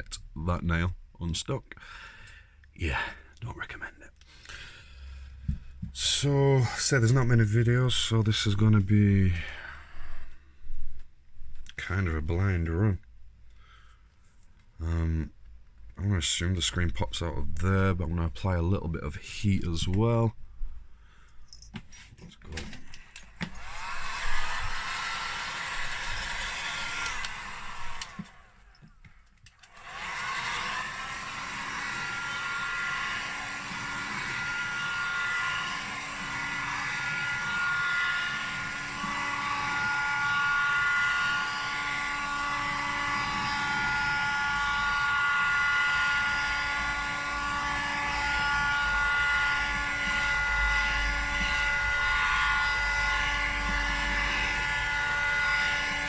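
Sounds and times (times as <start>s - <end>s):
hot-air tool blowing with whine: 4.2s - 11.0s, 22.8s - 56.0s.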